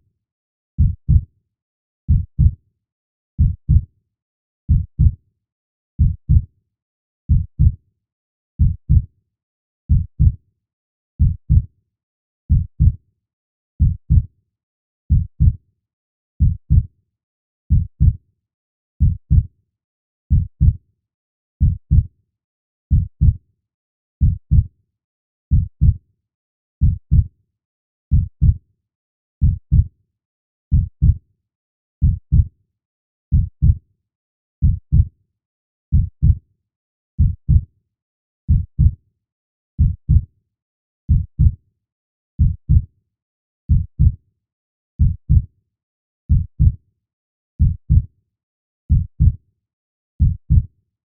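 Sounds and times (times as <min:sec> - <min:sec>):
heartbeat thumps: 0:07.3 - 0:07.7, 0:26.8 - 0:27.2, 0:43.7 - 0:44.1, 0:46.3 - 0:46.7.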